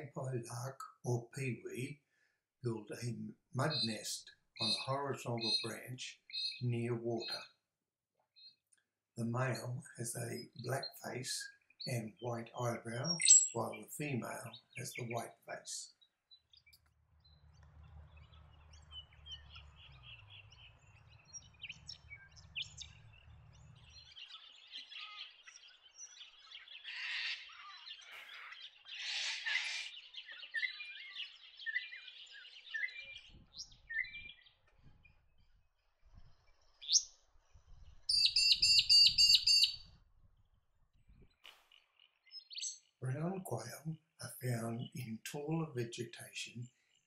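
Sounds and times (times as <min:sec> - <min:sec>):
bird calling: 0:02.9 - 0:07.5, 0:09.2 - 0:16.0, 0:18.2 - 0:34.6, 0:38.1 - 0:39.9
bird chirps and trills: 0:03.6 - 0:07.4, 0:09.3 - 0:35.2, 0:36.3 - 0:40.0, 0:41.6 - 0:43.0
rapid high bird call notes: 0:26.6 - 0:33.0, 0:38.1 - 0:39.8.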